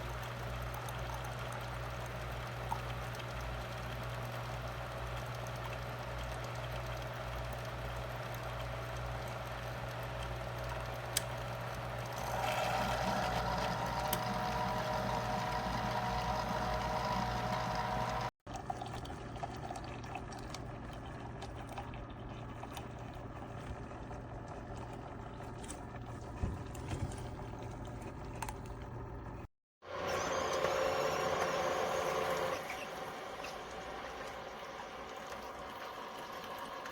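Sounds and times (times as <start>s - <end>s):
coffee maker pump hum: 0.0s - 36.9s
hot water trickling into cup: 30.5s - 36.9s.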